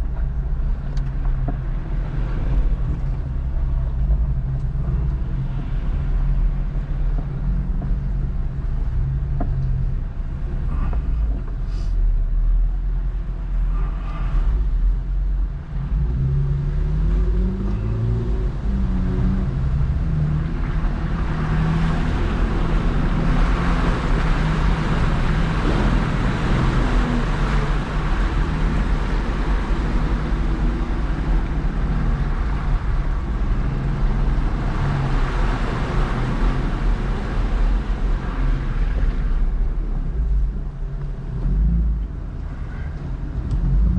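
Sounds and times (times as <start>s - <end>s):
off-road vehicle engine revving: 15.4s - 43.9s
rushing noise: 17.8s - 40.8s.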